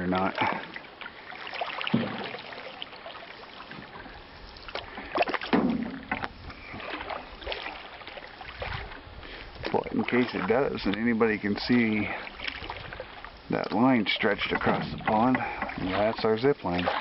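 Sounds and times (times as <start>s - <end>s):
paddle strokes splashing water: 0.0s - 17.0s
sharp knocks: 1.9s - 2.4s, 5.5s - 6.2s.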